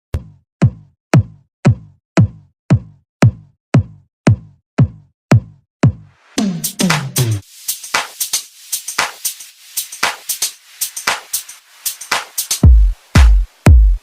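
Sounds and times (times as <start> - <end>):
drum machine bass kick: 0.2 - 8.2, 11.0 - 14.0
bass-boosted electronic music: 5.3 - 14.0.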